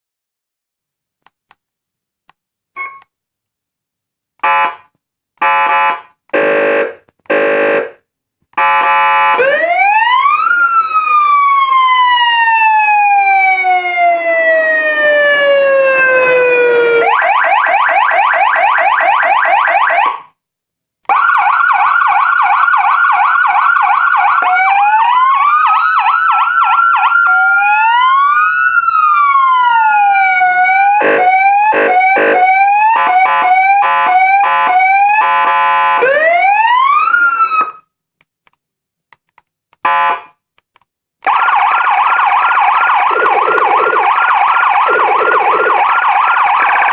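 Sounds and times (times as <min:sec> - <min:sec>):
electronic siren wailing and yelping: 0:08.6 - 0:20.3, 0:21.1 - 0:37.8, 0:41.2 - 0:46.9.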